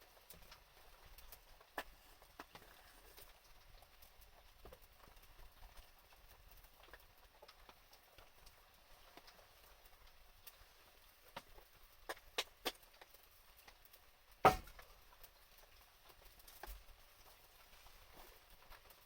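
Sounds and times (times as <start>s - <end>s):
wood fire crackling: 0.0s - 19.0s
fire pops: 14.4s - 14.9s.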